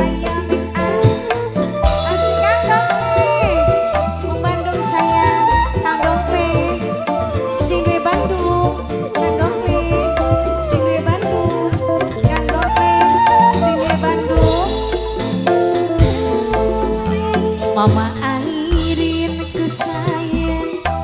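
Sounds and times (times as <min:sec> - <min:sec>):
drum and shaker hits: 0:00.0 - 0:21.0
gliding melody line: 0:00.0 - 0:21.0
heavy bass line: 0:00.0 - 0:21.0.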